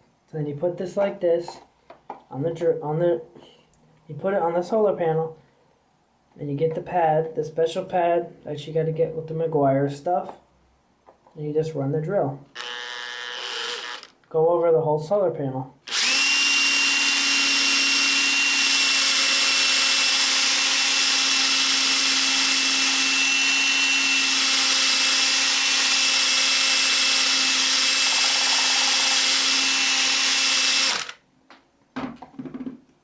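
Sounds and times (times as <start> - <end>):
electric drill polishing: 12.6 - 14.1, 15.9 - 31.2.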